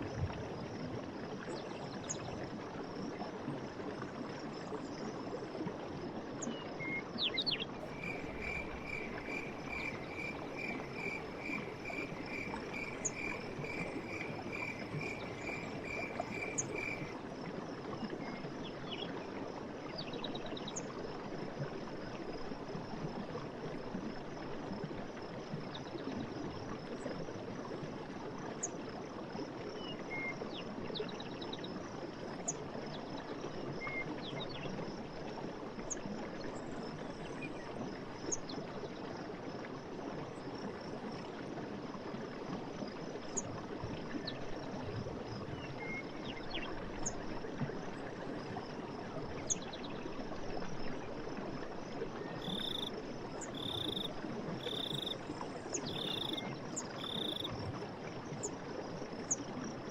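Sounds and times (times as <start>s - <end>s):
stream running: 0.0s - 59.9s
bird chirps: 55.8s - 56.4s, 57.0s - 57.5s.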